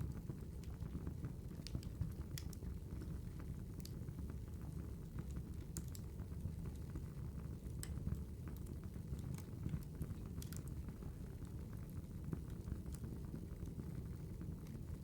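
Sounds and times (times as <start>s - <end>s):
wood fire crackling: 1.5s - 4.1s, 5.0s - 6.2s, 7.6s - 15.0s.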